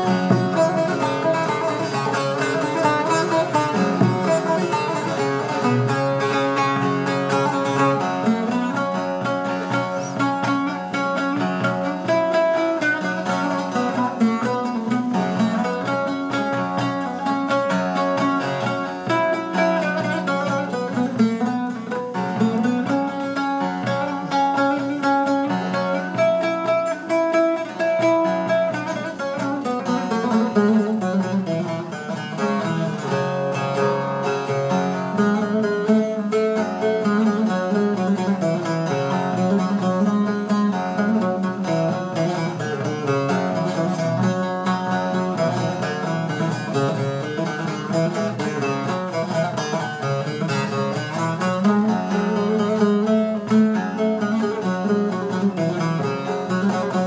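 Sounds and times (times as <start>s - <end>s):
plucked string instrumental music: 0.0s - 57.0s.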